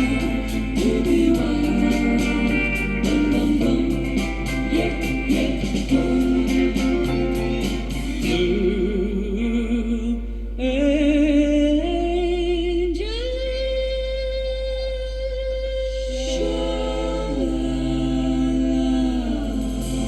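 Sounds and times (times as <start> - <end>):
ticking beat: 0.0 - 8.8
singer holding long notes: 0.0 - 20.0.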